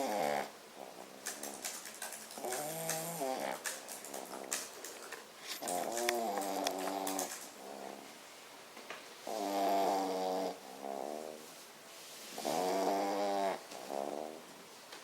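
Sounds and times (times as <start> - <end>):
dog snoring: 0.0 - 4.8, 5.6 - 8.1, 9.2 - 11.4, 12.4 - 14.5.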